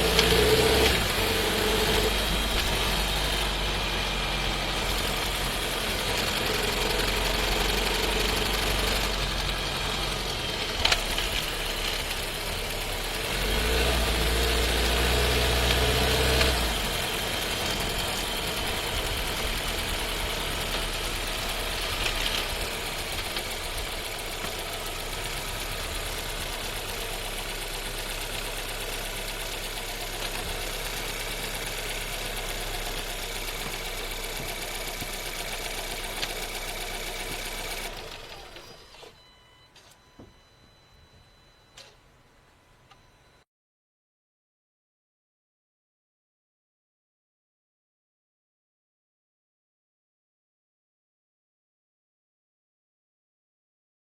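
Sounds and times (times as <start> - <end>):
car engine running: 0.0 - 39.0
gearbox downshift: 0.0 - 40.4.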